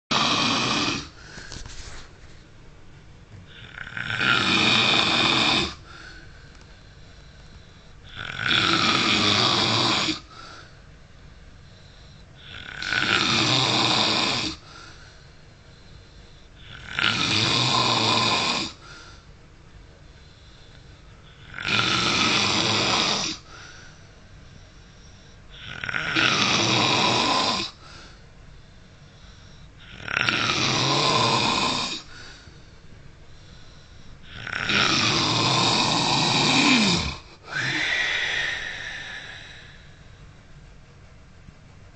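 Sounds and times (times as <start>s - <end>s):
man snoring: 0.1s - 1.5s, 3.5s - 6.0s, 8.0s - 10.4s, 11.8s - 14.7s, 16.6s - 18.9s, 21.3s - 23.6s, 25.5s - 27.8s, 29.3s - 32.4s, 33.4s - 40.0s
quiet breathing: 0.9s - 4.0s, 5.6s - 8.4s, 10.2s - 12.8s, 14.4s - 17.0s, 18.7s - 21.6s, 23.3s - 25.8s, 27.7s - 30.1s, 31.6s - 34.7s, 35.4s - 41.1s.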